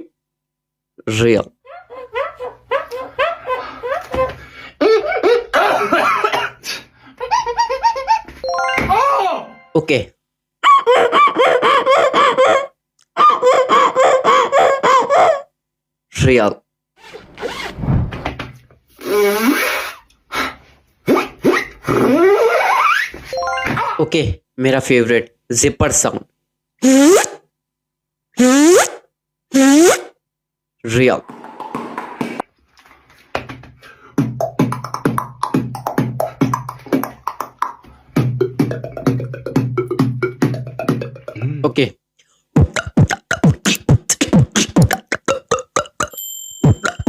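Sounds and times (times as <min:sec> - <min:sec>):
beatboxed mouth bursts: 0:19.0 - 0:22.4, 0:26.8 - 0:27.4, 0:28.4 - 0:29.0, 0:29.6 - 0:30.1, 0:34.0 - 0:41.6, 0:42.5 - 0:46.2, 0:46.8 - 0:47.0.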